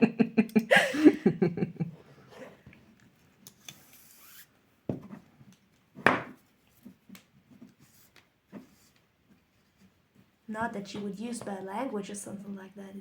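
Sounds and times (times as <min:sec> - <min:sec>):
cord rubbing through knot loops: 0:03.8 - 0:04.5.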